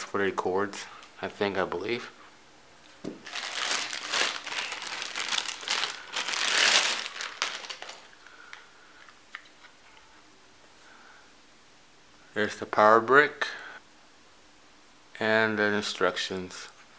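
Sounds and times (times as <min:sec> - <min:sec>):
packaging crinkling and rustling: 0:03.0 - 0:08.7.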